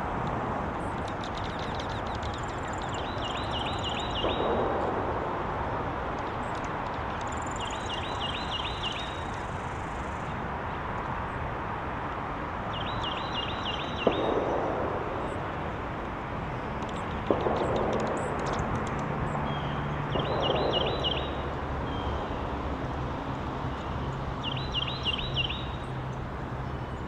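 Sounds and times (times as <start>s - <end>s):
songbird singing trilled notes: 0.8s - 4.7s, 6.2s - 10.3s, 12.7s - 14.5s, 16.8s - 22.6s, 23.7s - 26.0s.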